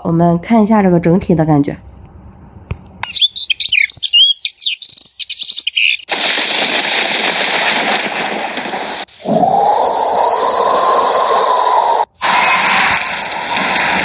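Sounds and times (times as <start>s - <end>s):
birds chirping: 3.0s - 6.1s.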